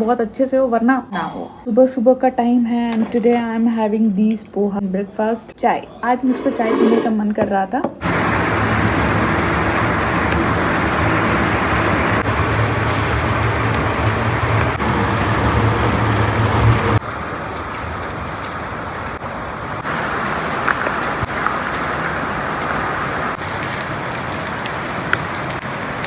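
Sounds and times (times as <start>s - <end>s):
road traffic: 8.0s - 17.0s
rain: 8.0s - 26.0s.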